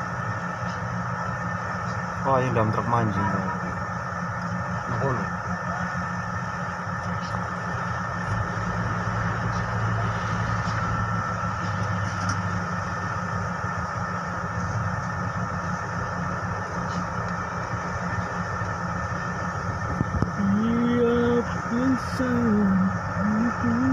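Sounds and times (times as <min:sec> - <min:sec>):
road noise hiss: 0:00.0 - 0:23.9
vehicle engine running: 0:00.0 - 0:23.9.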